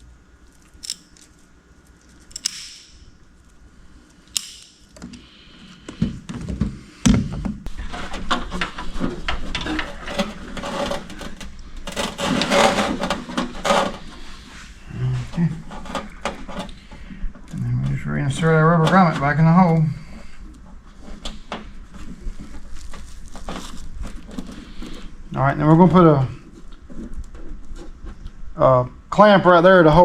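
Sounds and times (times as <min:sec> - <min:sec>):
wires rustling and crackling: 0:00.0 - 0:02.5, 0:07.7 - 0:28.6.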